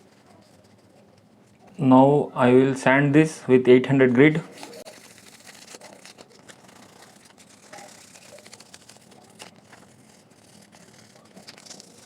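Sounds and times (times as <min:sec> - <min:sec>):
sandpaper rubbing plastic: 0:04.5 - 0:12.0.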